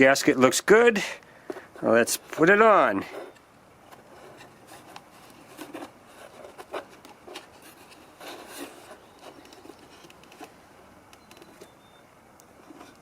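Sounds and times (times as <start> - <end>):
rubber rubbing: 1.8 - 10.5
small handling clicks: 9.1 - 10.5.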